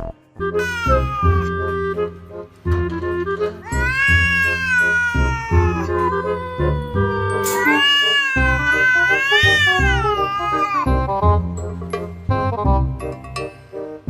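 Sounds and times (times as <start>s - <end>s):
background music with steady beat: 0.0s - 14.0s
cat yowling: 0.6s - 1.7s, 3.6s - 11.1s.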